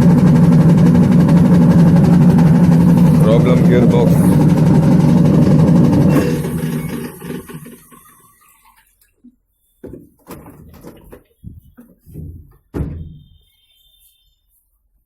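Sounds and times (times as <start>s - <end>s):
washing machine running: 0.0s - 9.1s
knocks and thuds: 9.8s - 13.4s.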